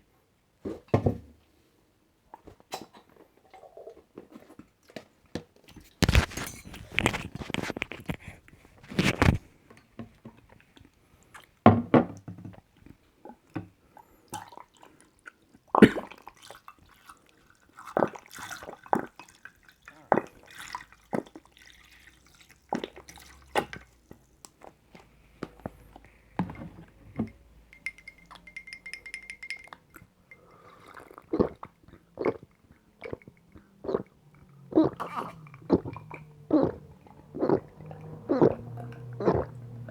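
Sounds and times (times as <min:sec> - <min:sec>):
sips and swallows: 0:05.8 - 0:09.5, 0:14.4 - 0:39.9
bottle clicks and knocks: 0:26.4 - 0:29.9.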